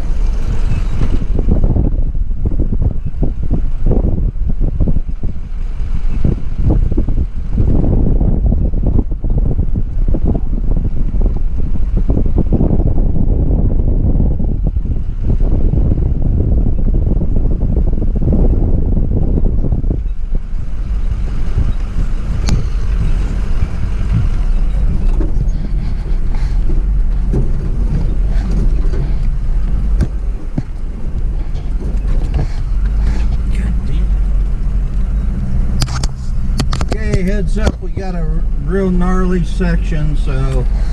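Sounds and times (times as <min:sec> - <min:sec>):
engine and tyres rumbling: 0:00.0 - 0:40.9
wind buffeting microphone: 0:00.0 - 0:40.9
clicks and rattles: 0:35.8 - 0:37.8.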